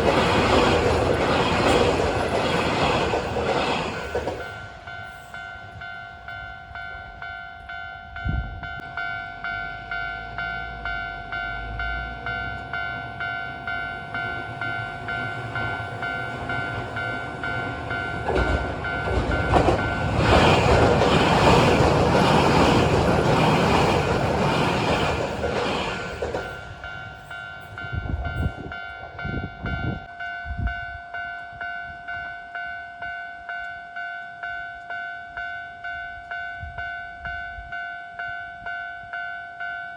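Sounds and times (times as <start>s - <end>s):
train wheels clacking over rail joints: 0.0s - 4.6s, 14.1s - 27.0s
level-crossing warning bell: 0.0s - 39.9s.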